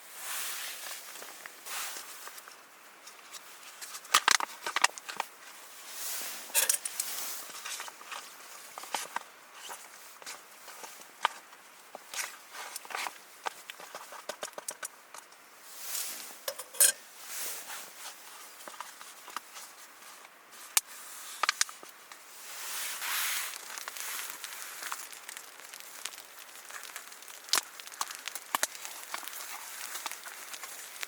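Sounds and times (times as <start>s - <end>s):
rustling: 15.7s - 31.0s
sharp clicks and crackles: 20.8s - 21.8s, 23.5s - 31.0s.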